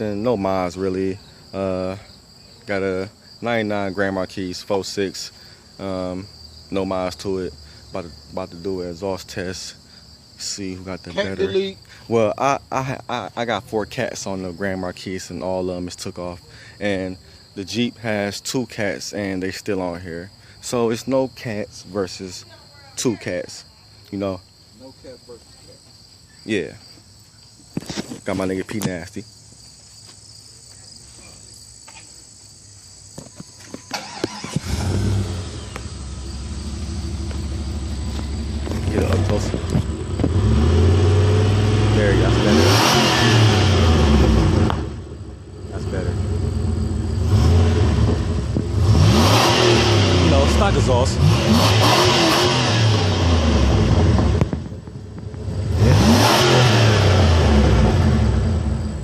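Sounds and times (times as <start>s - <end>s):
crickets chirping: 0.0s - 59.0s
car engine cranking and idling: 33.8s - 59.0s.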